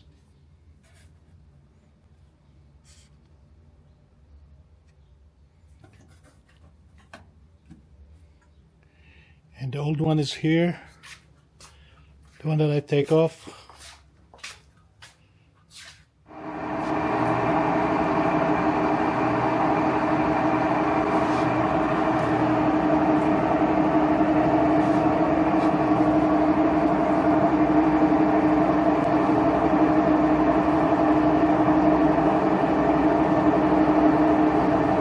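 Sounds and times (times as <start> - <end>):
washing machine spin cycle: 16.3 - 35.0.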